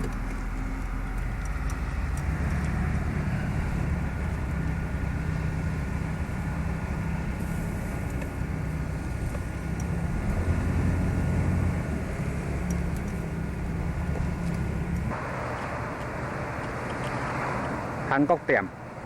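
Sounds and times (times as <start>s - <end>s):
car engine rumble and road noise: 0.0s - 19.0s.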